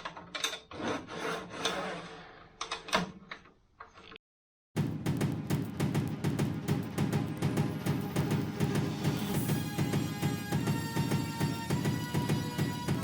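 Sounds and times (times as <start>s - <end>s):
music with steady beat: 4.8s - 13.0s.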